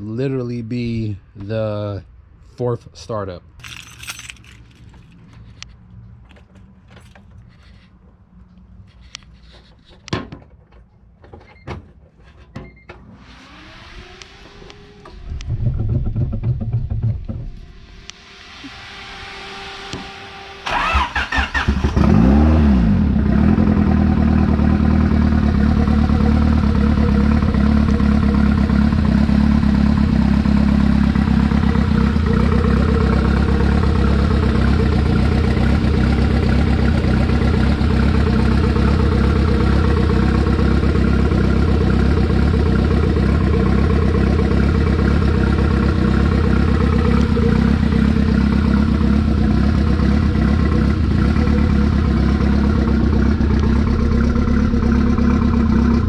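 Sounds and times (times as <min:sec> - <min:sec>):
engine cranking on starter: 0:20.6 - 0:22.9
car engine idling: 0:23.1 - 0:56.0.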